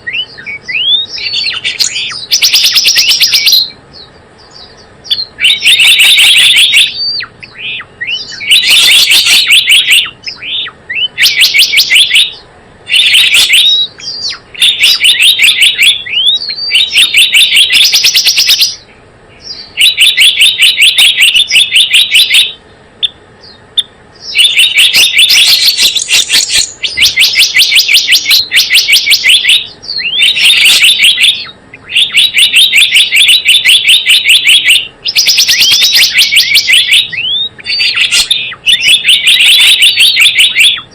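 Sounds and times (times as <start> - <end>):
bird chirping in rapid bursts: 0.0 - 40.9.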